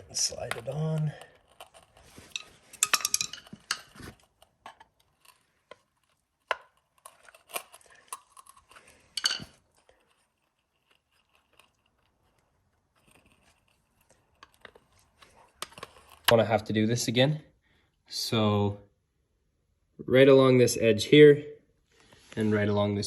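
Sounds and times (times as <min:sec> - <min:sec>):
small metal parts clicking: 0:00.4 - 0:04.0.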